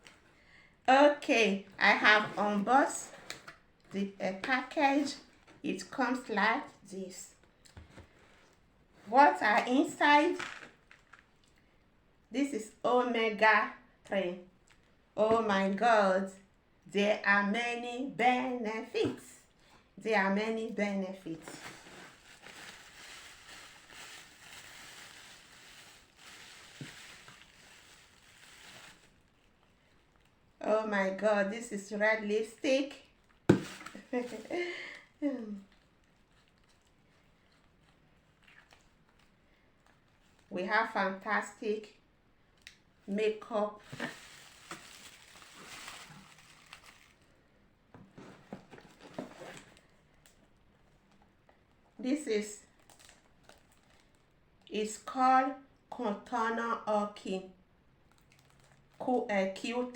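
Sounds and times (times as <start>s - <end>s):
packaging rustling: 21.5s - 30.4s, 33.2s - 35.0s, 43.8s - 47.4s.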